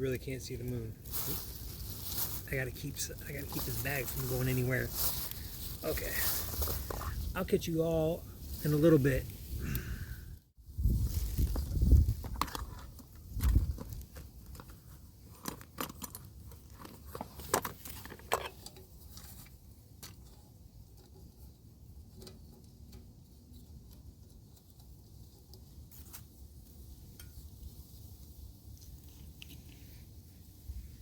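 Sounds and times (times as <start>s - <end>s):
wind buffeting microphone: 9.4s - 12.4s.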